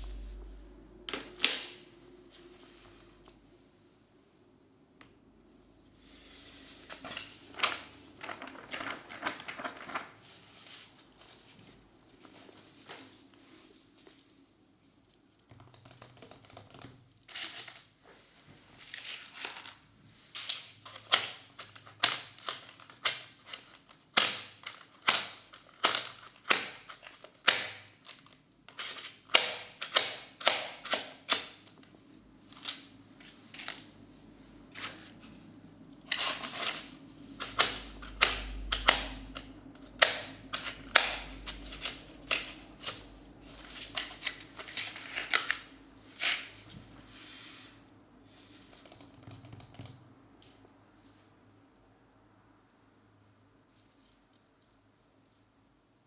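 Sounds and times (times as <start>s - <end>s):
low rumble: 0.0s - 2.3s.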